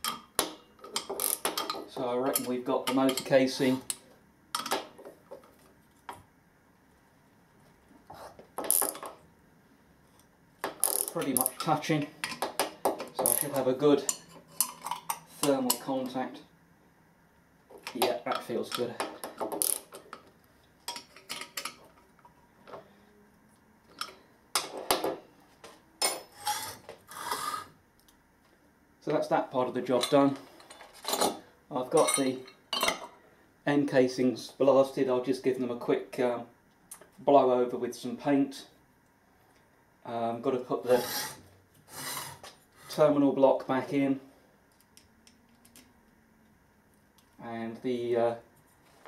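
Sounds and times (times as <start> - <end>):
metal tools clinking: 30.0 - 33.0.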